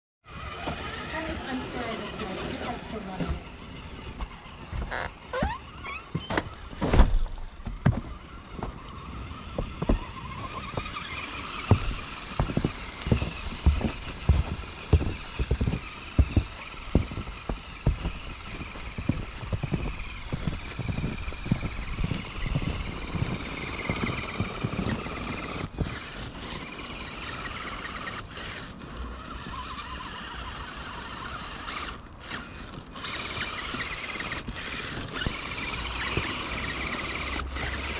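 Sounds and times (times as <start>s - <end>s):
rc truck motor whining: 0.3s - 37.9s
low thumps and knocks: 9.5s - 24.1s.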